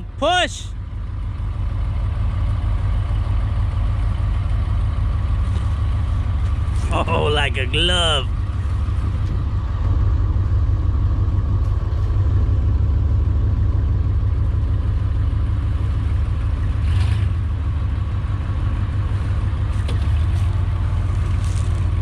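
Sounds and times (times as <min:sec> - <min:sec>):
vehicle engine low rumble: 0:00.0 - 0:22.0.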